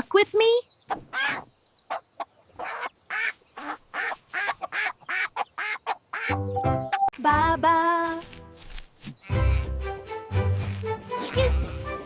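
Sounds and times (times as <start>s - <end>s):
hen clucking: 0.9s - 7.1s
music: 6.3s - 8.6s, 9.2s - 12.0s.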